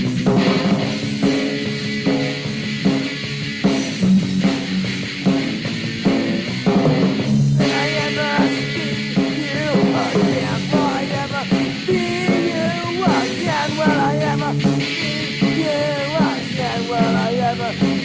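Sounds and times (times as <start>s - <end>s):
punk band playing: 0.0s - 18.0s
person singing: 7.6s - 18.0s.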